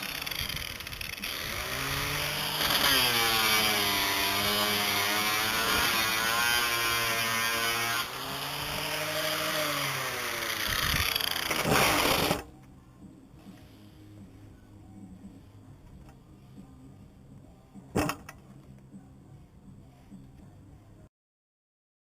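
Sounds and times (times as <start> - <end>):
circular saw cutting wood: 0.0 - 12.5.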